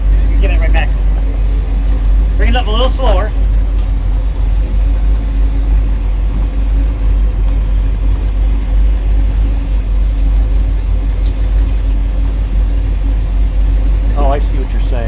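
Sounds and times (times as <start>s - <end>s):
boat engine rumbling: 0.0s - 15.0s.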